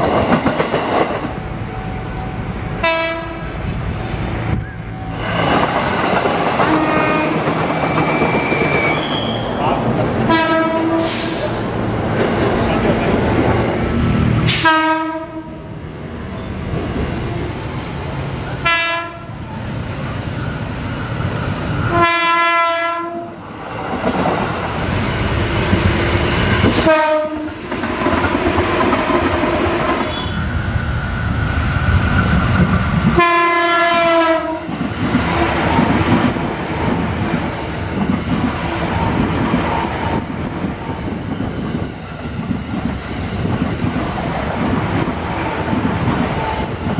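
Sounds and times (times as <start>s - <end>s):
train rumble and wheel clatter: 0.0s - 46.9s
electric train horn blasts: 2.8s - 3.6s, 6.7s - 7.5s, 10.3s - 11.4s, 14.5s - 15.7s, 18.6s - 19.4s, 21.9s - 23.4s, 26.8s - 27.6s, 33.2s - 34.7s.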